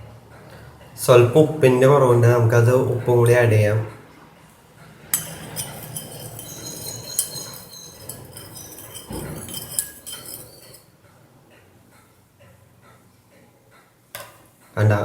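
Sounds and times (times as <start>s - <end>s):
spoon clinking against glass: 5.2s - 10.8s.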